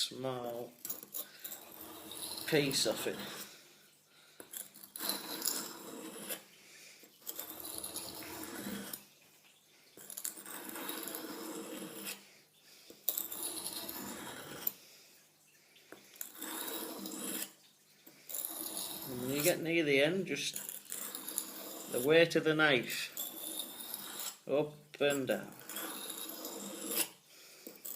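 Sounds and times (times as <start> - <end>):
knife scraping sharpening stone: 0.4 - 3.6, 4.4 - 6.6, 7.2 - 9.1, 9.9 - 12.3, 12.9 - 14.8, 16.1 - 17.6, 18.3 - 19.6, 20.4 - 22.2, 22.8 - 27.9.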